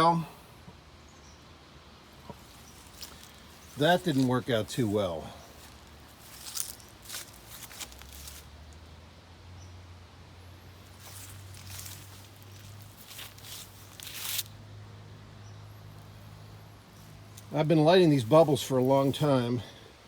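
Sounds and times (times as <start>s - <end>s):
rustling and handling noises: 2.1s - 8.8s, 10.8s - 14.6s.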